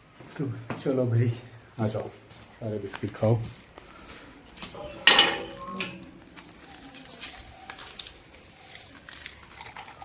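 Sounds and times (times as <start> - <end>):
dogs crunching biscuits: 6.0 - 10.0.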